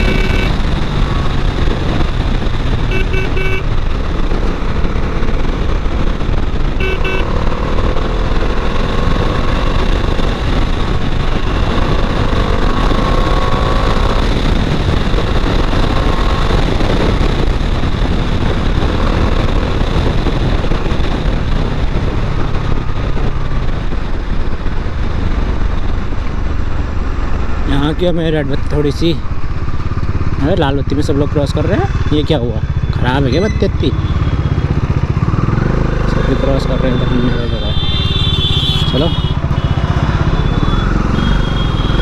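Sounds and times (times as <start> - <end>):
vehicle horn toot: 0.0 - 0.7, 2.9 - 3.8, 6.8 - 7.7, 37.0 - 42.0
motorcycle engine running: 0.0 - 27.6, 29.2 - 42.0
road and wind noise: 0.0 - 42.0.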